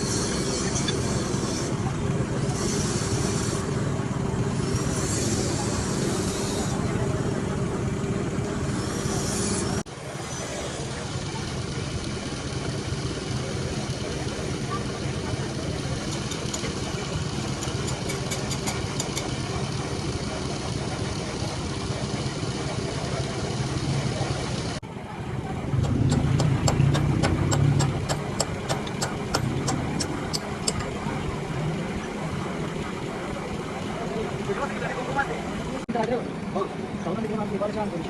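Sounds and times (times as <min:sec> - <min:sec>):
machine humming and ticking: 0:11.0 - 0:24.8, 0:25.4 - 0:34.6.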